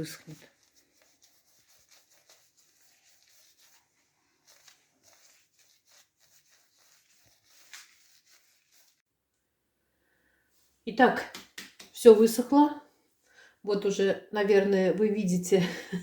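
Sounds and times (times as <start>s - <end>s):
paintbrush strokes on stone: 0.0s - 9.0s.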